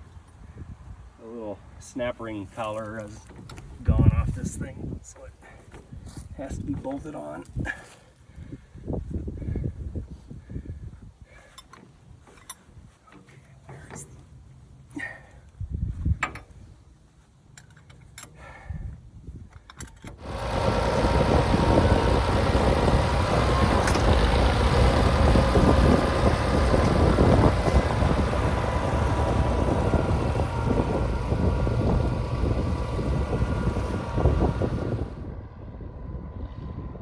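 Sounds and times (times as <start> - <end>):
tractor engine running loudly: 20.2 - 35.3.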